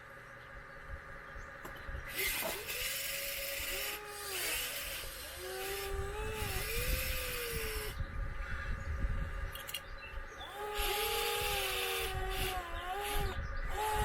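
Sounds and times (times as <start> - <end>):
electric motors whining: 1.6 - 8.6, 9.2 - 14.0
hydraulic hiss: 2.1 - 8.0, 10.5 - 14.0.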